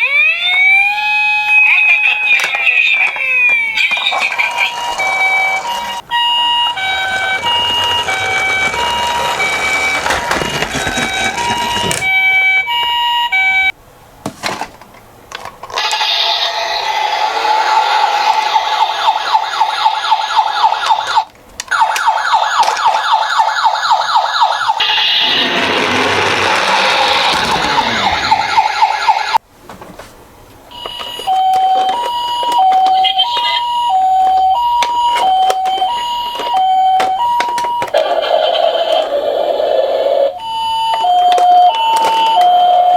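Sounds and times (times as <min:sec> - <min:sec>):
sweeping wail siren: 0:00.0 - 0:13.7, 0:16.1 - 0:29.4
two-tone ambulance siren: 0:00.0 - 0:13.7, 0:16.7 - 0:29.4, 0:30.8 - 0:39.1, 0:39.9 - 0:42.9
warbling yelp siren: 0:00.0 - 0:13.7, 0:15.9 - 0:29.4, 0:31.1 - 0:38.2.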